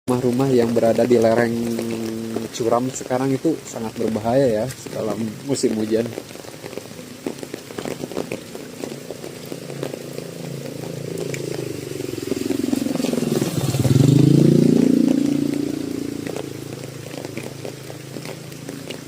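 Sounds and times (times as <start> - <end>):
rain dripping and pattering: 0.1 - 19.0
motorcycle passing by: 9.4 - 19.0.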